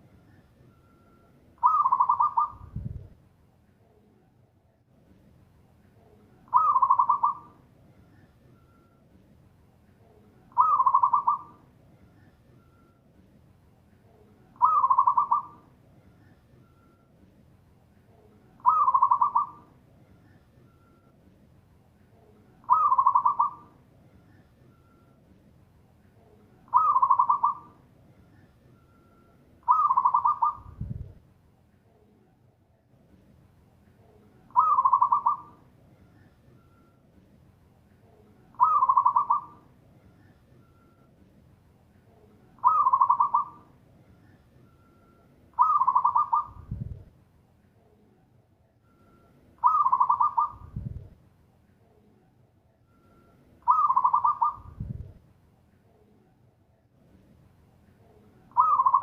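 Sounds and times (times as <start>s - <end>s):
dove cooing song: 1.6s - 3.0s, 6.4s - 8.4s, 10.4s - 12.4s, 14.5s - 16.4s, 18.5s - 20.6s, 22.3s - 24.6s, 26.7s - 28.6s, 29.6s - 31.0s, 34.5s - 36.6s, 38.5s - 40.6s, 42.6s - 44.5s, 45.5s - 47.0s, 49.6s - 51.0s, 53.6s - 55.1s, 58.5s - 59.0s.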